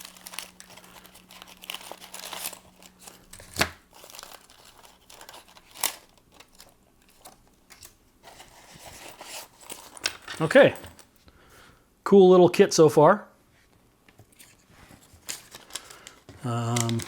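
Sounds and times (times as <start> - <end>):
plastic packaging crinkling: 0.0 - 10.6, 15.1 - 17.0.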